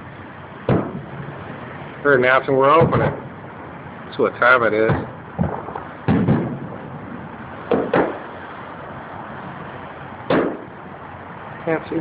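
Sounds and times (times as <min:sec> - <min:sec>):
steady background hiss: 0:00.0 - 0:12.0
distant fireworks booms: 0:00.6 - 0:01.2, 0:02.7 - 0:03.4, 0:04.4 - 0:08.5, 0:10.3 - 0:10.8.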